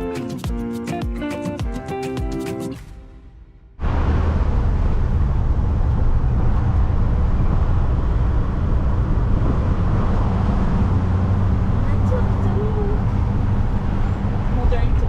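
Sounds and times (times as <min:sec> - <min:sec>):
vehicle road noise: 0:03.8 - 0:15.0
wind buffeting microphone: 0:03.8 - 0:15.0.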